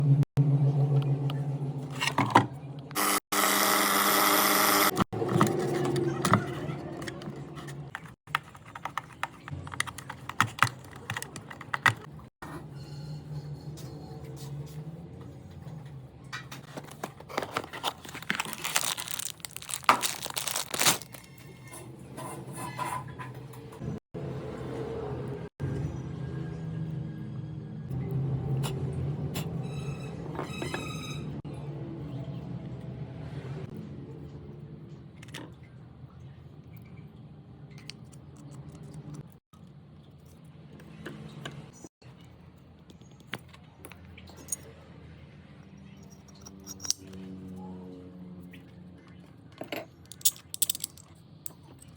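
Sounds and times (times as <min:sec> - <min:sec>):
rustling and crinkling handling: 0:16.7 - 0:21.6.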